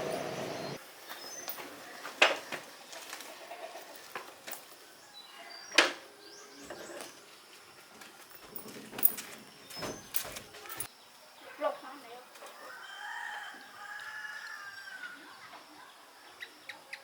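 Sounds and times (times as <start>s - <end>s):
birds chirping: 0.0s - 1.6s.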